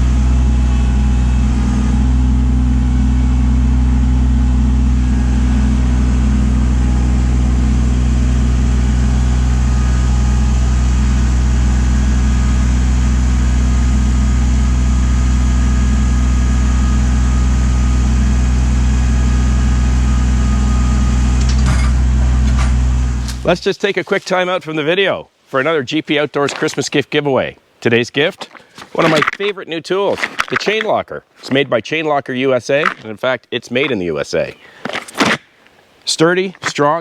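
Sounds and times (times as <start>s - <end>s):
tractor diesel engine running: 0.0s - 24.2s.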